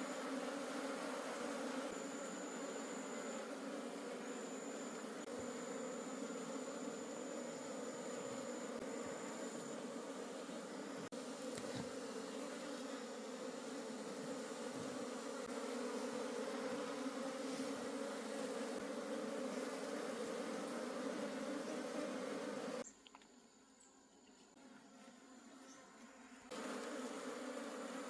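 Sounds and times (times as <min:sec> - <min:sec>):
honey bees buzzing: 0:00.0 - 0:22.9, 0:24.5 - 0:28.0.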